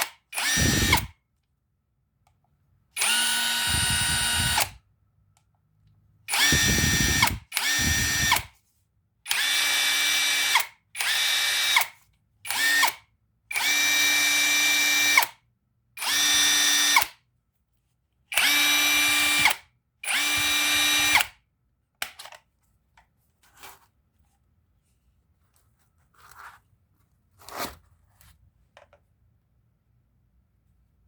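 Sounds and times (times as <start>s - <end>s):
cordless power tool motor whining: 0.4s - 1.1s, 3.0s - 4.8s, 6.3s - 8.5s, 18.4s - 21.3s.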